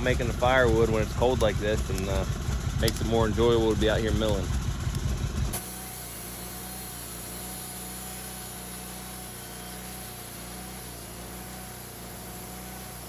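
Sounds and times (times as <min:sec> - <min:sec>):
engine humming: 0:00.0 - 0:13.0
thin steady whine: 0:00.0 - 0:13.0.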